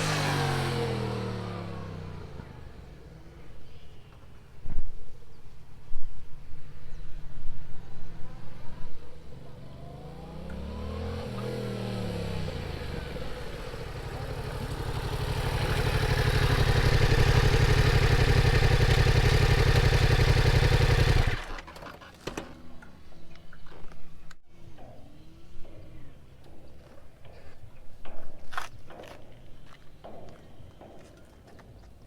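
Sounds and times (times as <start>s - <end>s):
motorcycle engine passing by: 0.0s - 3.7s, 8.0s - 21.7s.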